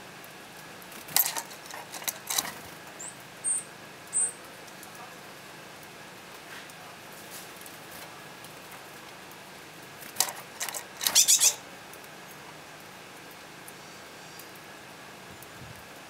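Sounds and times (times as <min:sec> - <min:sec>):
faint steady hiss: 0:00.0 - 0:16.0
small birds chirping: 0:01.2 - 0:05.1, 0:10.1 - 0:11.6.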